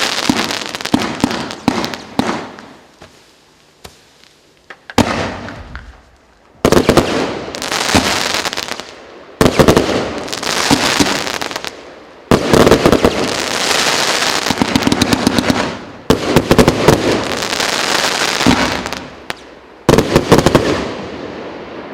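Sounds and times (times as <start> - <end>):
firework bangs: 0.0 - 3.2, 3.8 - 21.5
firework crackling: 0.0 - 21.5.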